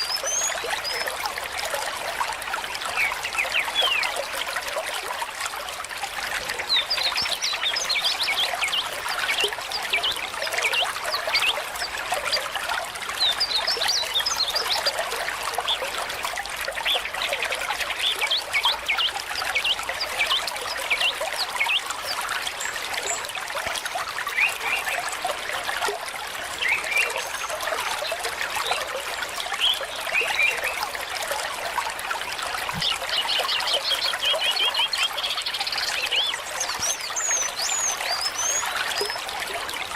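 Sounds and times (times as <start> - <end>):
water trickling: 0.0 - 39.9
small birds chirping: 32.4 - 39.3.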